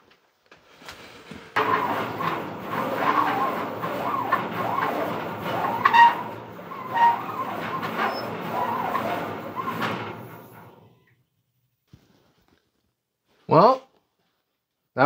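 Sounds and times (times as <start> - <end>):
machine knocks: 1.6 - 11.1
stepper motors whining: 1.6 - 11.1.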